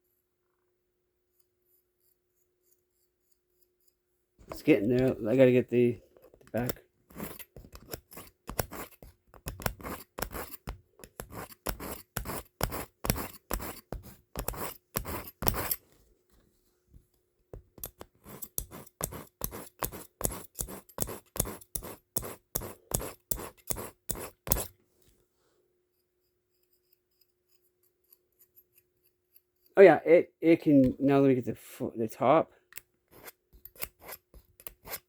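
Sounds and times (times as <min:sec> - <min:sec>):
knife scraping on sharpener: 0:06.2 - 0:15.8, 0:17.8 - 0:24.7, 0:26.2 - 0:29.8, 0:32.7 - 0:35.0.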